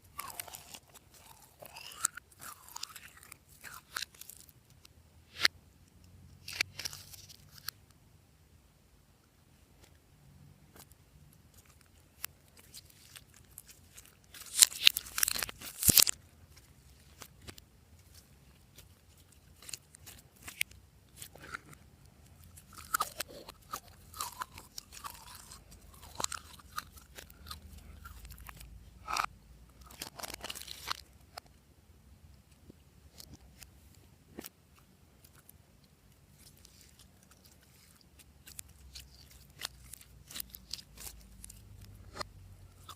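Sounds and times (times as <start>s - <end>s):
slime squishing and crackling: 0.0s - 4.8s, 11.5s - 31.1s, 36.3s - 42.3s.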